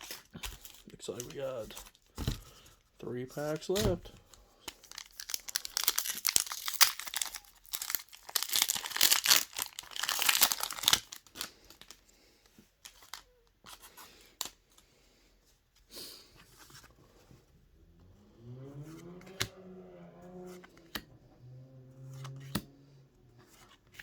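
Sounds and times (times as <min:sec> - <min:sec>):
cards rustling: 0:00.0 - 0:14.9, 0:22.0 - 0:22.7
foil wrapper tearing and crinkling: 0:04.6 - 0:12.0.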